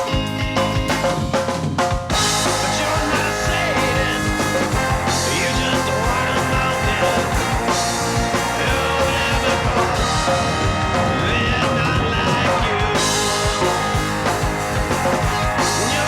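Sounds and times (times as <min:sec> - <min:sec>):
rock music with guitar and drums: 0:00.0 - 0:16.0.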